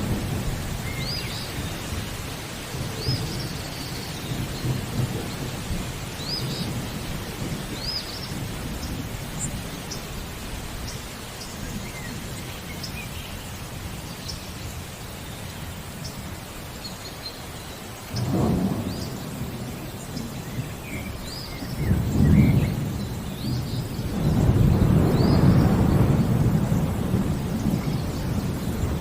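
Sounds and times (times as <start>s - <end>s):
thunder rumbling: 0.0s - 10.8s, 18.1s - 29.0s
steady rain: 0.0s - 29.0s
birds chirping: 0.7s - 29.0s.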